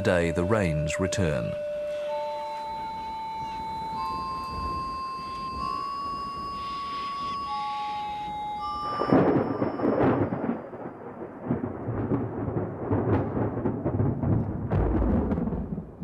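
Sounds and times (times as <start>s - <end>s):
held music notes: 0.0s - 10.5s
rolling thunder: 2.7s - 7.6s, 8.6s - 16.0s
thunder cracks: 8.8s - 16.0s.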